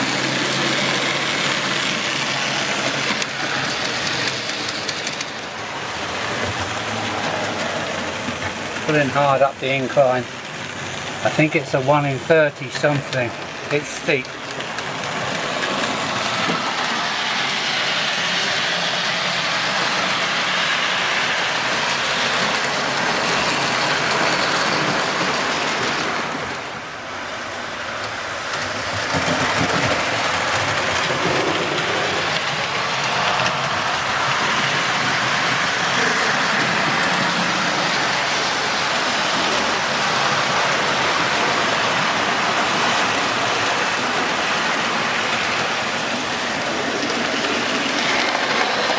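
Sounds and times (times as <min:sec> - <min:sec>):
model train motors whirring: 0:00.0 - 0:48.9.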